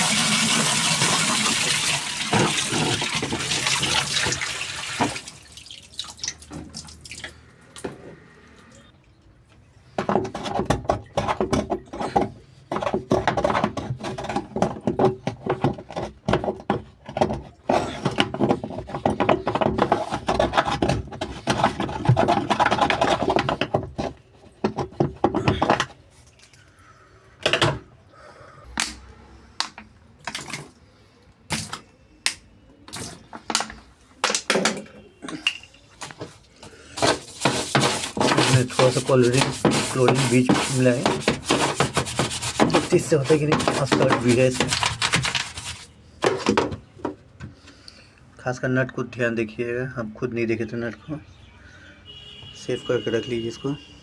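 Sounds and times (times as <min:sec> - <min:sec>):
plastic parts clattering: 0:33.0 - 0:47.2.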